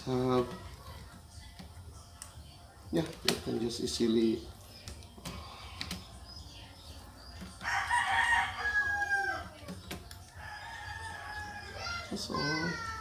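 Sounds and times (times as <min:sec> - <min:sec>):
rooster crowing: 0:07.6 - 0:09.7, 0:10.3 - 0:13.0.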